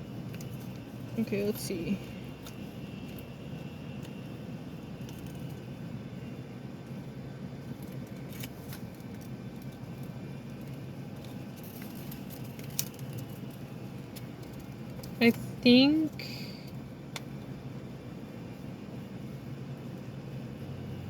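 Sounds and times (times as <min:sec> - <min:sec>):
low background hum: 0:00.0 - 0:21.0
plastic packaging rustling: 0:10.5 - 0:15.1.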